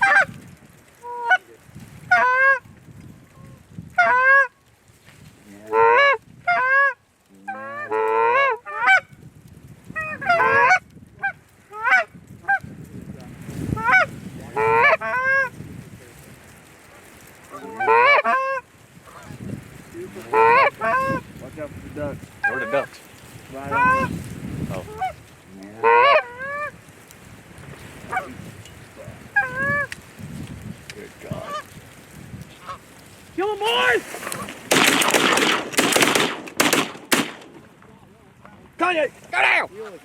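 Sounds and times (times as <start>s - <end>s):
geese honking and clucking: 0.0s - 0.4s, 1.0s - 4.6s, 5.6s - 9.2s, 10.0s - 12.7s, 13.7s - 15.6s, 17.4s - 19.5s, 20.1s - 21.4s, 22.4s - 26.9s, 28.0s - 28.4s, 29.0s - 30.1s, 31.2s - 37.9s.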